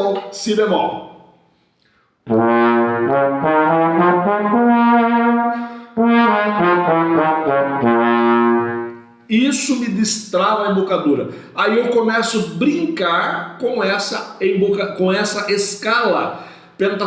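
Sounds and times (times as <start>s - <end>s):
trombone playing a scale: 2.3s - 9.2s.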